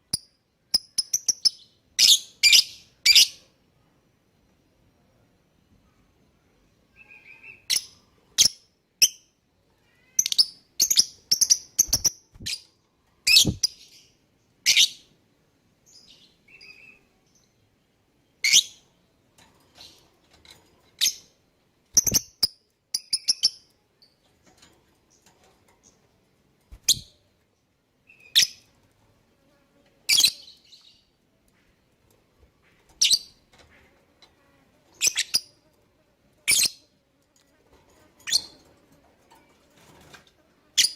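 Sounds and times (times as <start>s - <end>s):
birds chirping shrilly: 13.3s - 13.7s.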